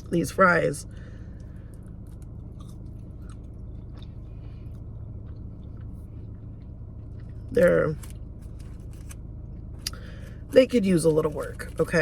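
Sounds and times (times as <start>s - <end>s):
steady low hum: 0.0s - 12.0s
close-miked chewing: 1.4s - 8.2s.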